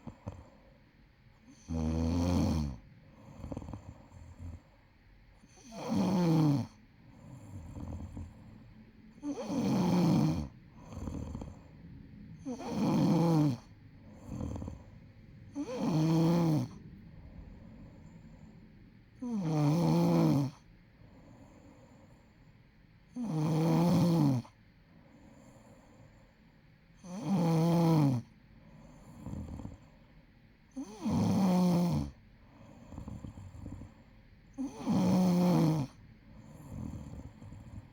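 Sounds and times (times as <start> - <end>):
quiet breaths: 0.0 - 37.9
person snoring heavily: 5.6 - 6.8, 9.2 - 11.7, 12.4 - 14.9, 15.5 - 16.8, 19.2 - 20.6, 34.6 - 36.0.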